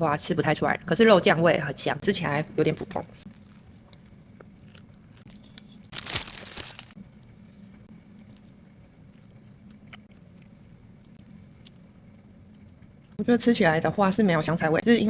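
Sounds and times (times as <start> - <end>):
faint chewing clicks: 8.1 - 13.2.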